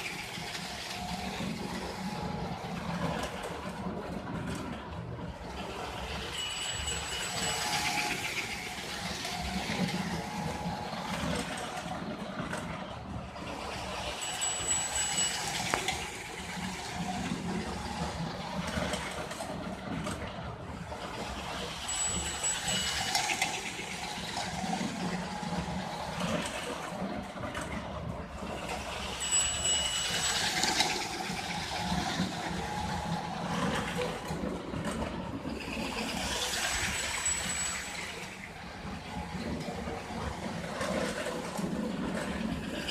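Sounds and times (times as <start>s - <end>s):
toy train running on track: 0.0s - 42.9s
thin high tones: 5.9s - 11.2s, 13.8s - 18.5s, 21.7s - 25.9s, 29.0s - 34.1s, 35.6s - 39.6s.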